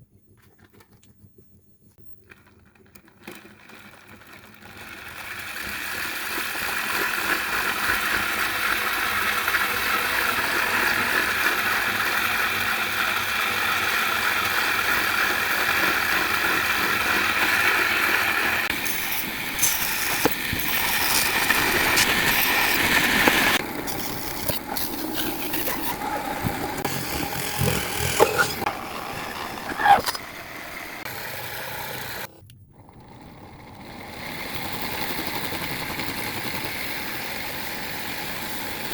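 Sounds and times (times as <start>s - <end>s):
electric motor whirring: 11.3s - 34.9s.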